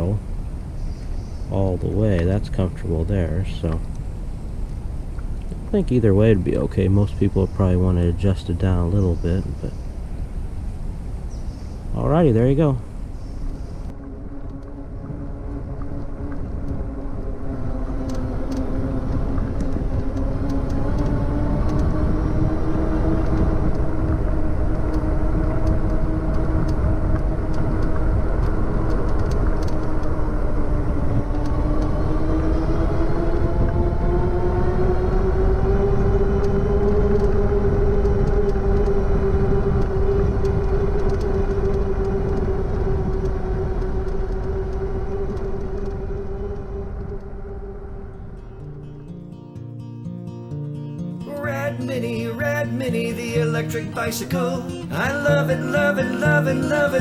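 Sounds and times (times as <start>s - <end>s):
wind rumble on microphone: 0.0s - 49.2s, 51.3s - 57.0s
electric bike motor whining: 13.0s - 48.9s.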